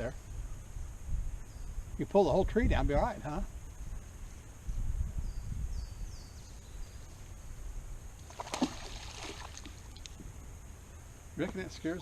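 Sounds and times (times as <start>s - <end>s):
splashing and rustling: 8.2s - 10.2s.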